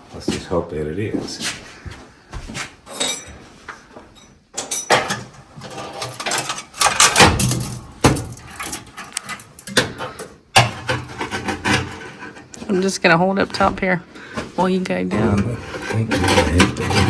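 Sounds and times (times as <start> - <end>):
metal tools clinking and scraping: 2.9 - 12.7, 15.1 - 17.0.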